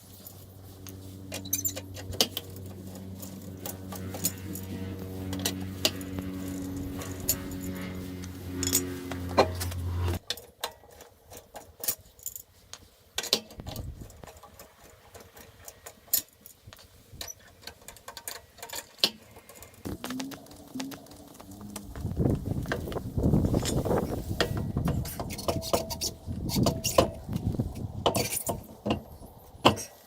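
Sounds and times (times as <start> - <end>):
low hum: 0.0 - 10.2, 19.8 - 25.3.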